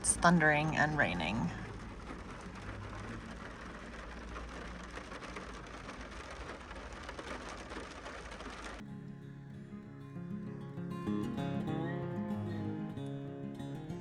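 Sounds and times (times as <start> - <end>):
heavy rain falling: 0.0 - 8.8.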